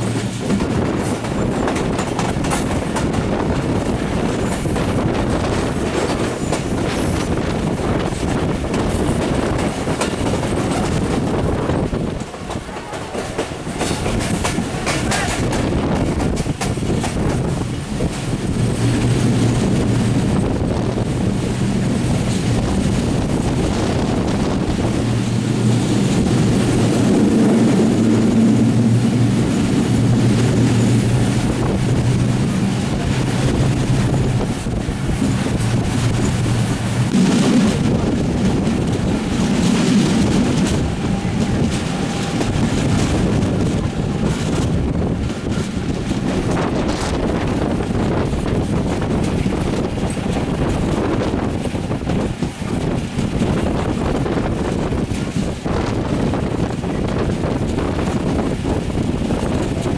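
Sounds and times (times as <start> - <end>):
train hum and rumble: 0.0 - 59.9
wind rushing over microphone: 0.0 - 59.9.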